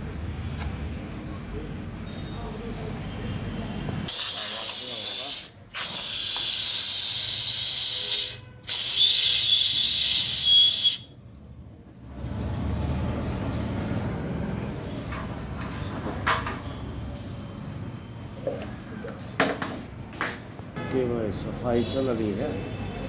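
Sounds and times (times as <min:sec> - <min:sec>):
compressed air gun hissing: 0:04.1 - 0:11.0.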